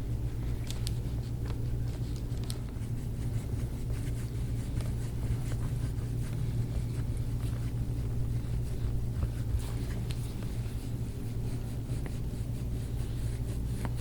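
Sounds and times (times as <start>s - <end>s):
steady low hum: 0.0s - 14.0s
hands rubbing and scratching: 0.1s - 14.0s.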